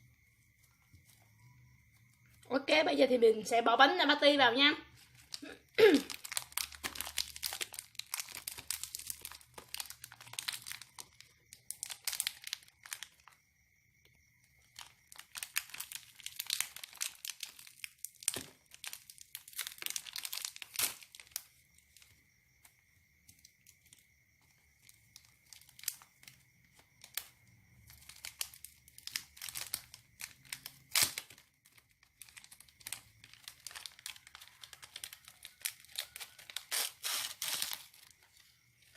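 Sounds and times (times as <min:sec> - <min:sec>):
plastic wrapper crinkling and tearing: 0:05.0 - 0:13.4, 0:14.6 - 0:22.1, 0:24.8 - 0:38.9.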